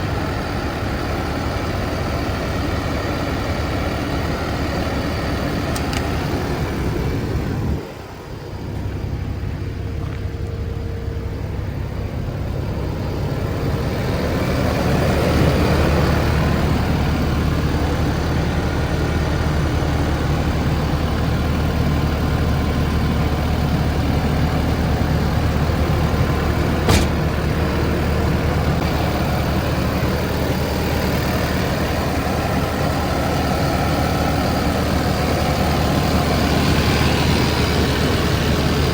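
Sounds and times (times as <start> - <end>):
diesel engine running: 0.0 - 38.9
sharp click: 5.8 - 6.1, 26.9 - 27.3.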